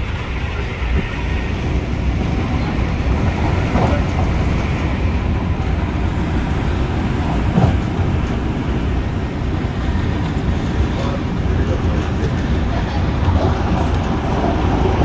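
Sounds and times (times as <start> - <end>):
train knocks: 0.0 - 10.6
train rumble inside carriage: 0.0 - 15.0.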